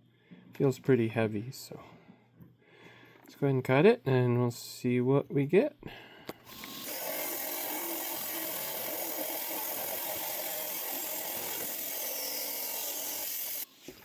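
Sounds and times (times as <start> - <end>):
rock saw grinding stone: 6.5 - 14.0.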